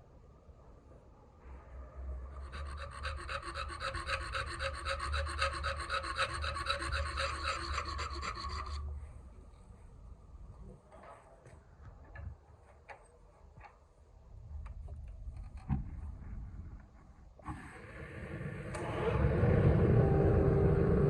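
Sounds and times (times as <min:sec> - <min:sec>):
file rasping on steel: 0:02.3 - 0:08.9
low hum: 0:14.4 - 0:21.0.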